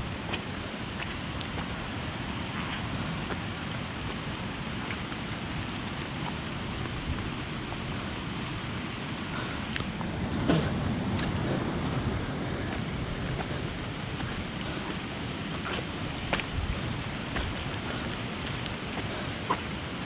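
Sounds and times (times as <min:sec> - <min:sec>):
rushing water hiss: 0:00.0 - 0:20.0.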